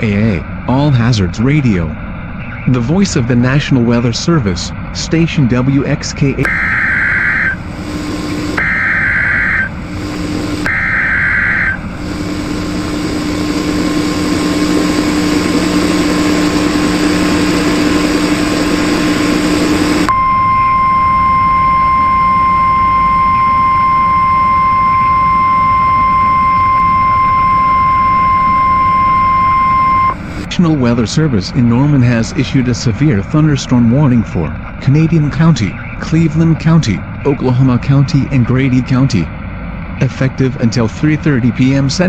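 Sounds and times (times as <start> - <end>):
hiss with low hum: 6.2 - 20.1
steady warning alarm tone: 6.4 - 30.5
screeching digital data bursts: 6.5 - 18.4.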